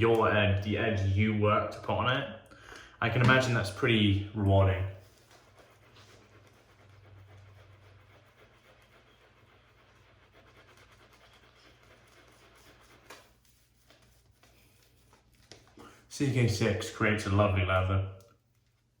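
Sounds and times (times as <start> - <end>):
shaving brush swishing lather: 4.6 - 19.0.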